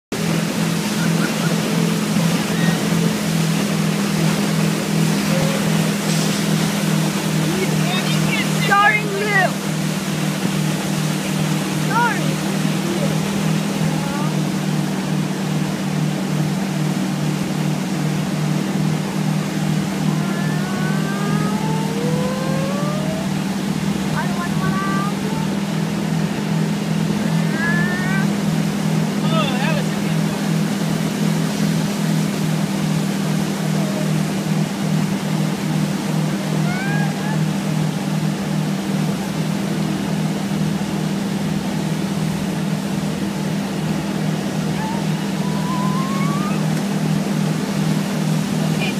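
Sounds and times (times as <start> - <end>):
low motor drone: 0.1 - 48.9
engine revving whine: 0.2 - 29.2, 43.0 - 48.6.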